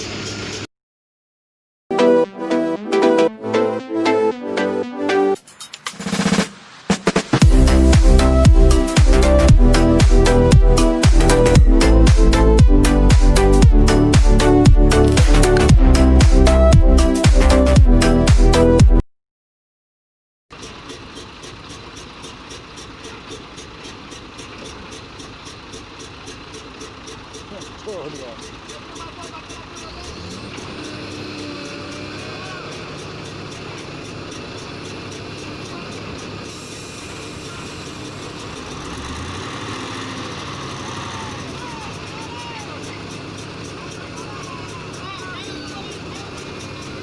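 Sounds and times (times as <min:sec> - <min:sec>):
diesel engine idling: 0:07.4 - 0:18.8, 0:20.5 - 0:47.0
regular light ticking: 0:20.6 - 0:47.0.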